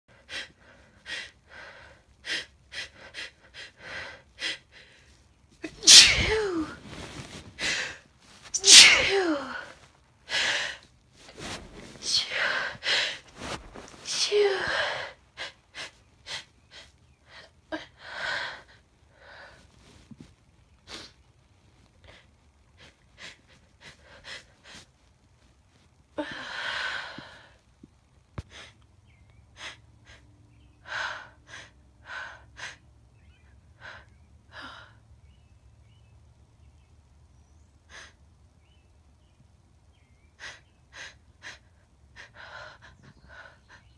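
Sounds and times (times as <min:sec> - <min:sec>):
woman sneezing: 0:05.7 - 0:06.8, 0:08.6 - 0:09.7.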